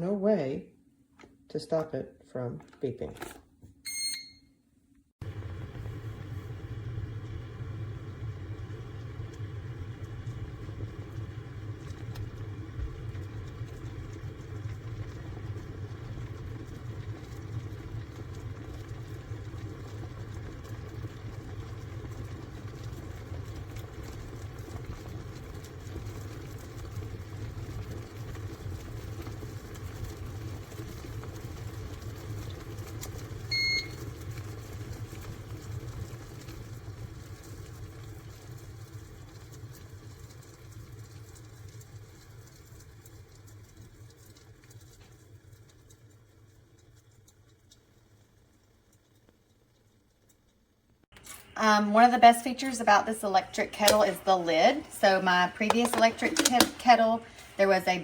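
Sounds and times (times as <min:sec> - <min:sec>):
electric kettle beeping: 0:03.2 - 0:04.4, 0:33.1 - 0:34.4, 0:51.2 - 0:58.0
water heating in kettle: 0:05.2 - 0:58.0.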